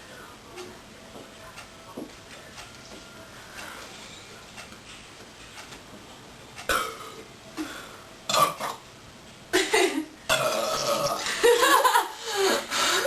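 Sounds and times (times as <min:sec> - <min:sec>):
girls burping: 0:10.3 - 0:11.3.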